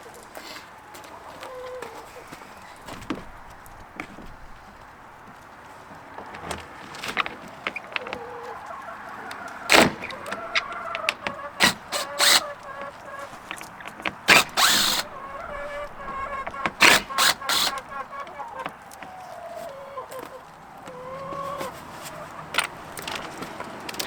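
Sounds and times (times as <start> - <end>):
hens clucking: 0.0 - 23.8
wooden knocks and bangs: 6.1 - 19.2.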